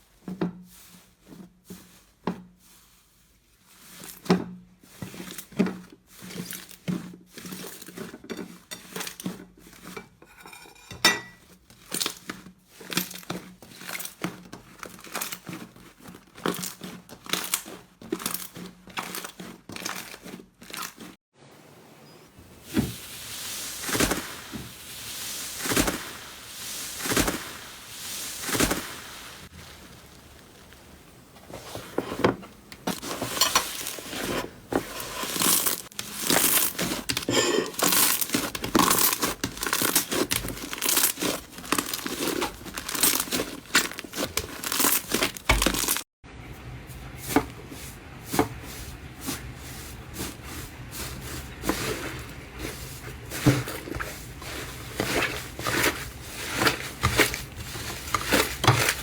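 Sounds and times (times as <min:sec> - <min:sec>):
squishy slime swells: 0:00.0 - 0:10.0, 0:11.4 - 0:59.0
slime crackling and popping: 0:37.8 - 0:46.0.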